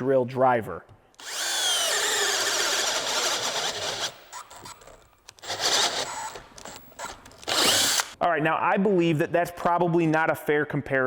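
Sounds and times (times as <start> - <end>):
drill boring into wood: 1.2 - 8.2.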